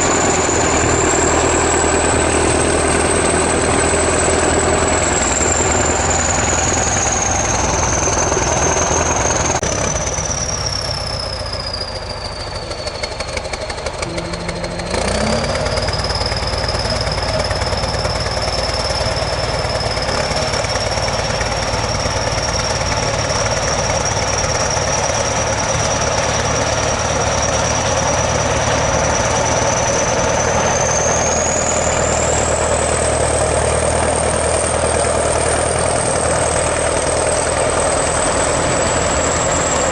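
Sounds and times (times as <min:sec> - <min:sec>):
bulldozer diesel engine: 0:00.0 - 0:39.9
high mechanical whine: 0:13.4 - 0:21.1.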